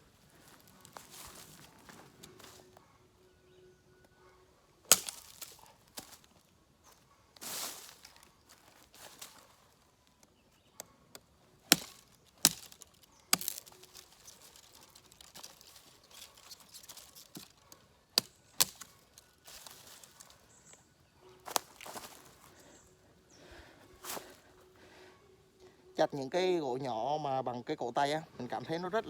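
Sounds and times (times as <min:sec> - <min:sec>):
knife chopping into wood: 0:04.9 - 0:05.5, 0:11.7 - 0:13.7, 0:18.2 - 0:19.0
soft rustling: 0:07.4 - 0:10.2.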